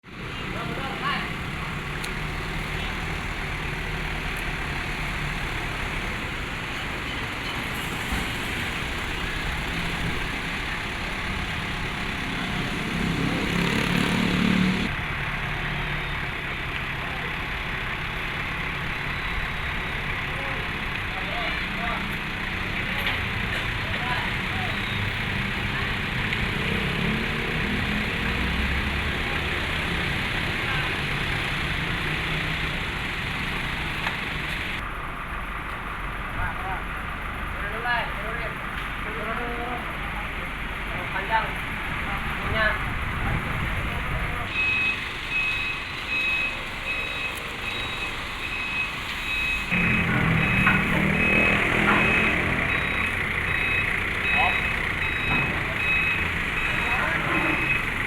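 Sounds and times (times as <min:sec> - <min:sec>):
vehicle engine running: 0:08.4 - 0:24.8, 0:47.6 - 0:58.0
reversing alarm beeping: 0:24.6 - 0:25.3, 0:44.5 - 0:58.0
vehicle engine idling: 0:29.0 - 0:58.0.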